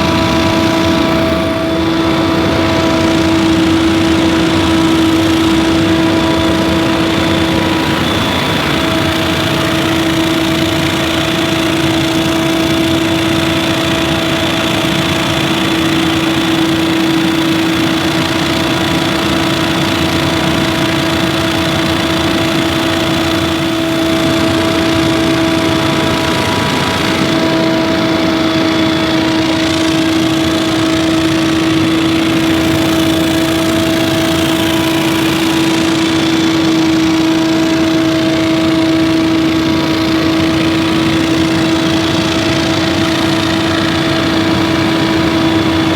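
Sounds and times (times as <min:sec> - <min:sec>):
leaf blower whining: 0:00.0 - 0:45.9.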